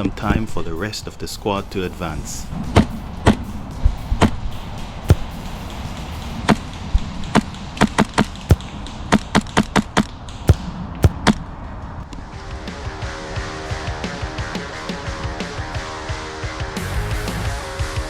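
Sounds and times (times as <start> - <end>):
airsoft gun shots: 5.1 - 5.5.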